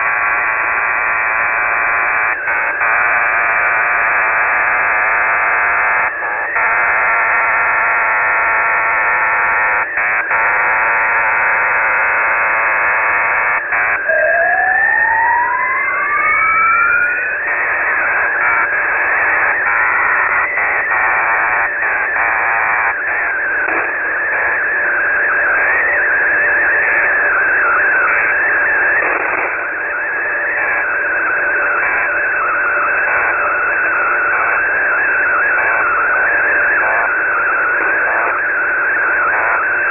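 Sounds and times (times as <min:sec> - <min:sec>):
steady data tones: 0:15.9 - 0:39.9
radio static: 0:17.1 - 0:39.9.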